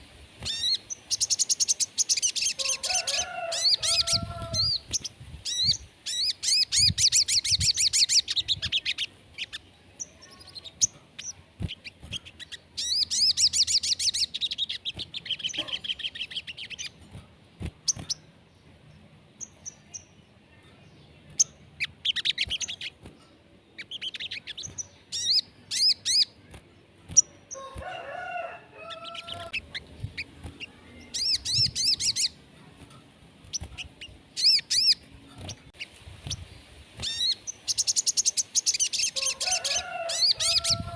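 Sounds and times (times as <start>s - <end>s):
bird rapid high chirps: 0.4s - 17.1s, 21.2s - 23.2s, 23.8s - 26.5s, 28.8s - 32.4s, 33.4s - 40.9s.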